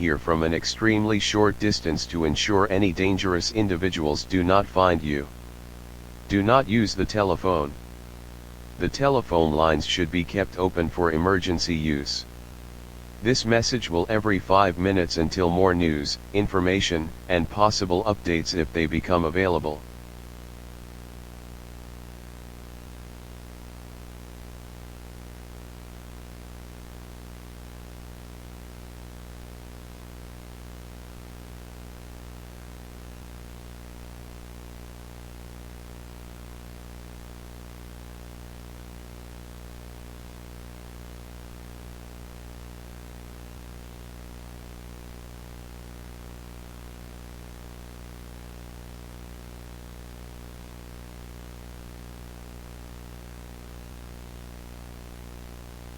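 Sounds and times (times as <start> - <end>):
electrical hum: 0.0 - 19.9.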